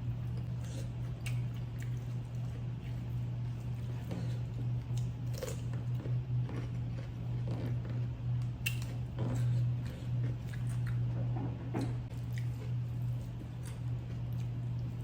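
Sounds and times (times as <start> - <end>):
steady low hum: 0.0 - 15.0
chewing and biting: 0.2 - 11.1, 12.1 - 15.0.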